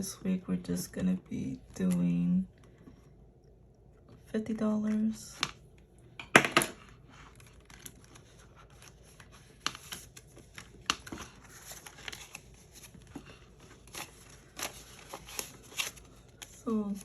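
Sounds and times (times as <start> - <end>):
banknotes rustling: 6.8 - 17.0.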